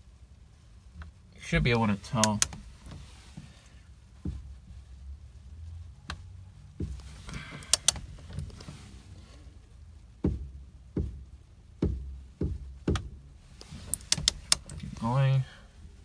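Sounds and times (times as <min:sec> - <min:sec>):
sharp metallic clicks: 0:01.7 - 0:02.7, 0:07.0 - 0:08.6, 0:13.6 - 0:15.3.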